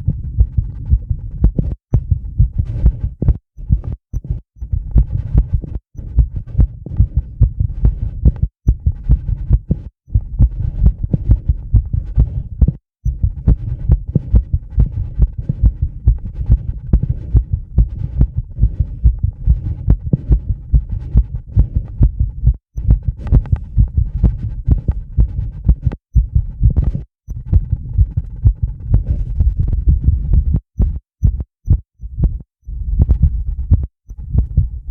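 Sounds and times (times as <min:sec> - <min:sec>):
fast heartbeat thumps: 0:00.0 - 0:34.9.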